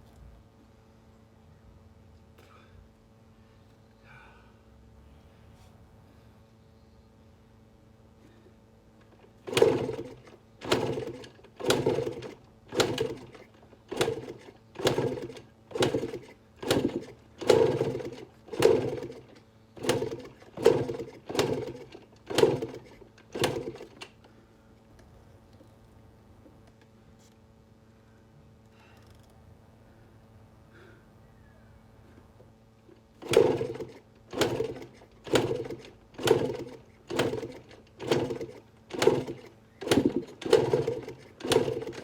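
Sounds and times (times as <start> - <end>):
motorcycle engine kick-start: 9.0 - 24.2, 32.9 - 42.0.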